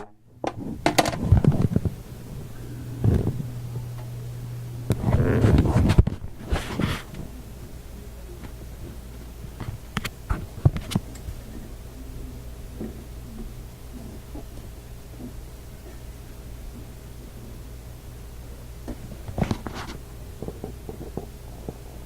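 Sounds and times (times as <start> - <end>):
handling clicks and knocks: 0.0 - 2.0
steady low hum: 0.0 - 22.0
rustling: 4.9 - 17.6.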